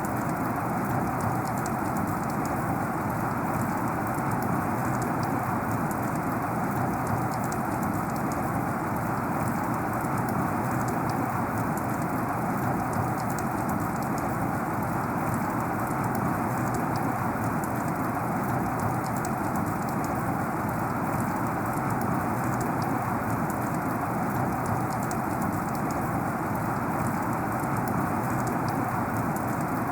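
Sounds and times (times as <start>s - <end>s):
single raindrops ticking: 12.8s - 29.9s.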